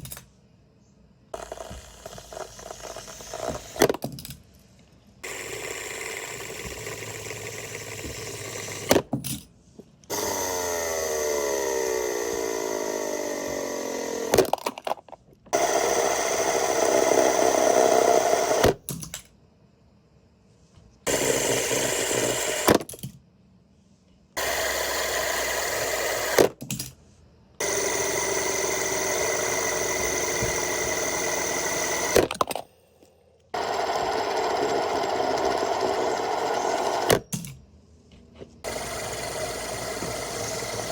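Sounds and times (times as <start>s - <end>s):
fidget spinner whirring: 1.4s - 3.9s, 5.2s - 9.0s, 10.1s - 18.8s, 27.6s - 32.3s, 33.0s - 37.3s, 38.6s - 40.9s.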